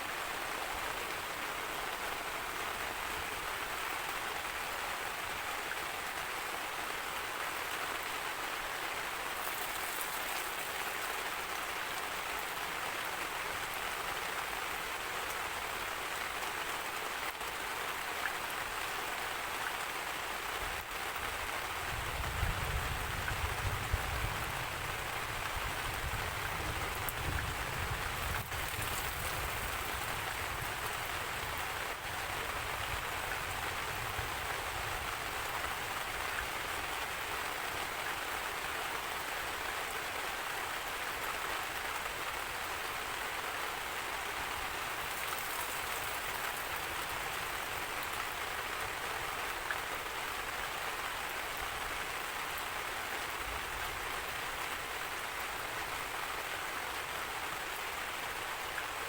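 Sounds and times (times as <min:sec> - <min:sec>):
heavy rain hissing: 0:06.6 - 0:13.8, 0:20.8 - 0:39.5, 0:41.6 - 0:50.8.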